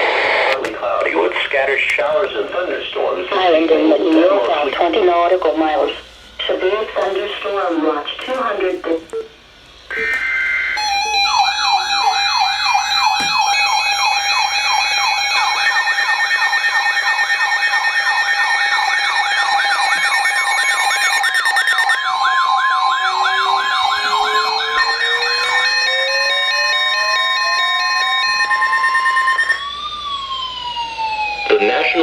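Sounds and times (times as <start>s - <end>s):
steady tone: 9.9s - 29.6s
electronic siren sweeping: 9.9s - 32.0s
high beeping tones: 10.8s - 29.7s
low tone gliding upward: 17.8s - 28.2s.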